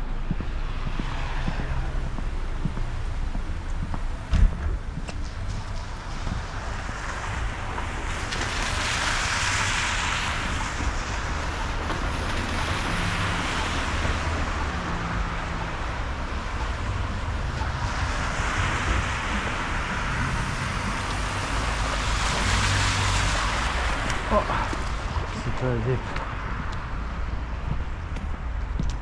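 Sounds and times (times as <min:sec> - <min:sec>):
wind rumble on microphone: 0:00.0 - 0:29.0
tyres hissing on wet road: 0:05.8 - 0:26.3.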